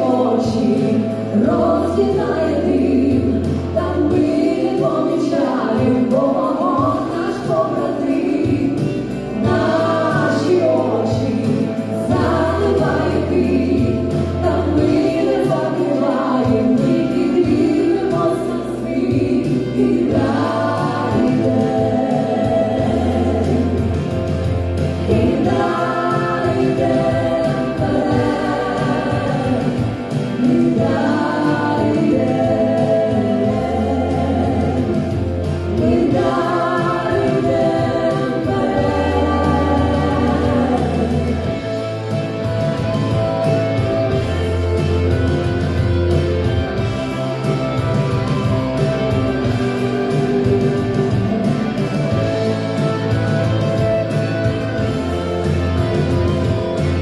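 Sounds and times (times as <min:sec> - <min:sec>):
choir singing: 0:00.0 - 0:42.0
instrumental accompaniment: 0:00.0 - 0:57.0.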